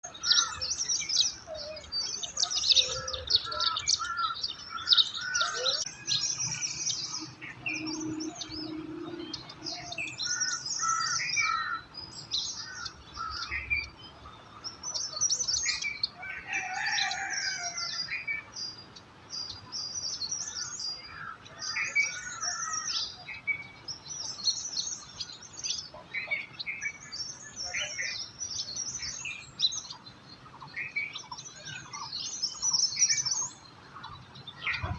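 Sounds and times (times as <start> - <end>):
songbirds chirping: 0.0 - 34.9.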